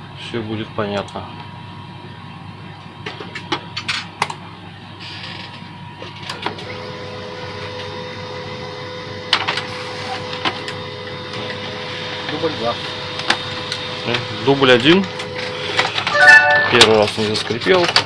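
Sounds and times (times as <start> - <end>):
printer motor whine: 6.0 - 17.8.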